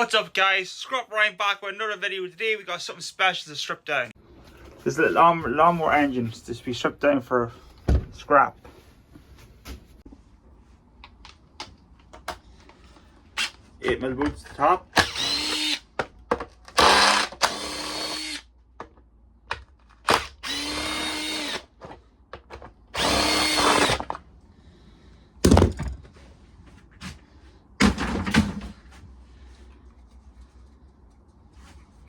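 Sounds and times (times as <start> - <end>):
power drill whining: 15.0 - 15.8, 16.7 - 18.4, 20.1 - 21.7, 23.0 - 24.2.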